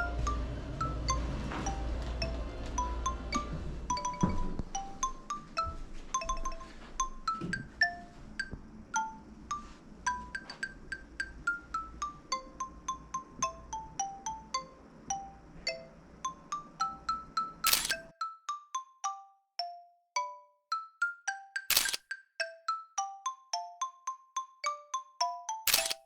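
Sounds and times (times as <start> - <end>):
bell-like melody: 0.0 - 17.6.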